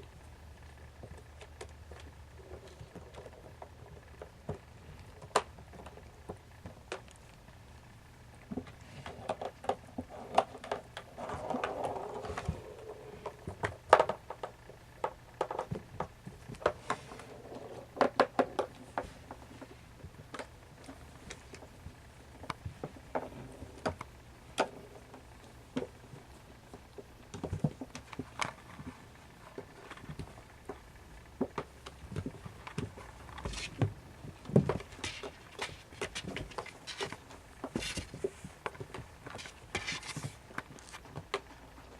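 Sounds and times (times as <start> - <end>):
kittens scrabbling and tapping: 8.4 - 30.8, 31.4 - 41.9.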